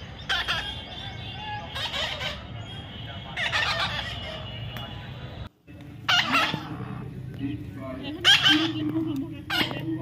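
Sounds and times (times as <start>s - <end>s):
parrot squawking: 0.1s - 2.7s, 3.3s - 4.5s, 6.1s - 7.1s, 8.1s - 8.9s, 9.5s - 9.9s.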